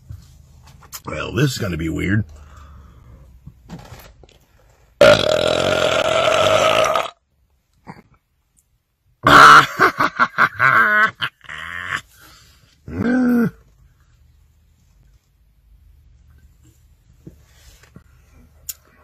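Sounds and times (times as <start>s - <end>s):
man belching loudly: 5.0s - 7.2s, 9.2s - 9.9s, 12.9s - 13.6s.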